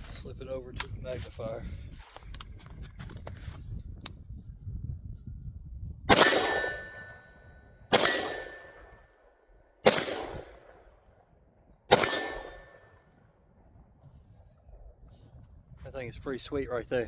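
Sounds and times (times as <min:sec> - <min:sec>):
steel target ringing: 0:06.1 - 0:09.0, 0:11.9 - 0:13.0
rifle shots with echo: 0:06.1 - 0:09.2, 0:09.8 - 0:11.3, 0:11.9 - 0:13.1.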